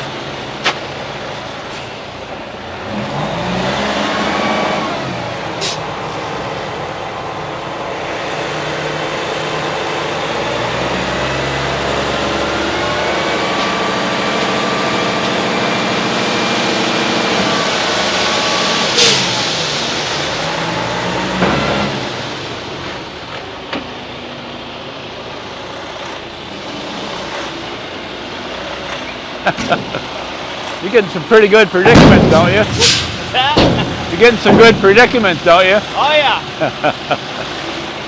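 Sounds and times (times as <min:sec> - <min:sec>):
heavy diesel engine revving: 0:00.0 - 0:38.0
sharp metallic clanks: 0:31.8 - 0:35.3.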